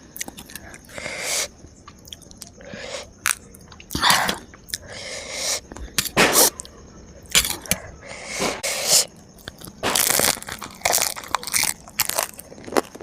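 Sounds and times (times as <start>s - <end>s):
chewing crisp food: 0.2s - 1.0s, 1.8s - 2.5s, 9.4s - 13.0s.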